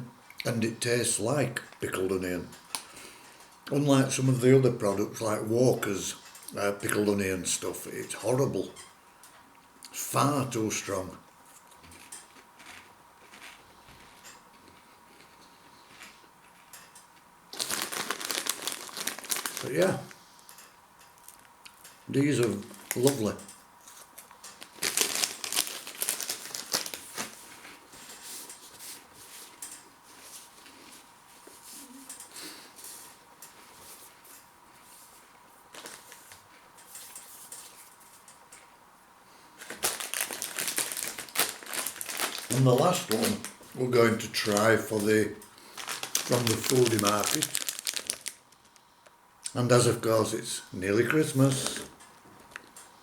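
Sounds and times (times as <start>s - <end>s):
faint clicks and rustles: 11.4s - 38.8s
crunchy snacks being chewed: 11.7s - 16.8s, 17.5s - 20.6s, 23.8s - 27.4s, 39.6s - 43.6s, 45.6s - 48.9s
snack packet crinkling: 12.0s - 16.7s, 17.5s - 20.5s, 21.2s - 28.2s, 35.7s - 36.5s, 39.6s - 48.9s, 51.0s - 52.7s.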